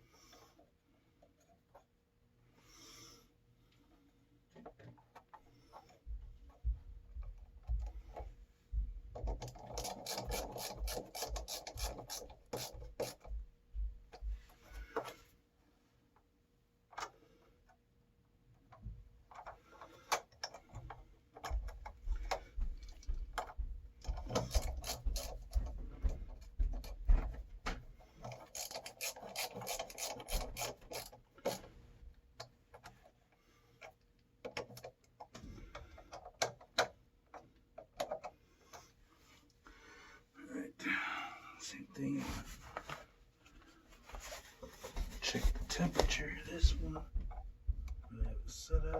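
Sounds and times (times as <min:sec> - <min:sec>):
hand work clicks and knocks: 0:09.1 - 0:13.4, 0:18.7 - 0:31.7, 0:33.8 - 0:38.8
rubbing scrapes on parts: 0:09.2 - 0:13.3, 0:24.1 - 0:27.0, 0:28.1 - 0:31.8, 0:43.7 - 0:46.4.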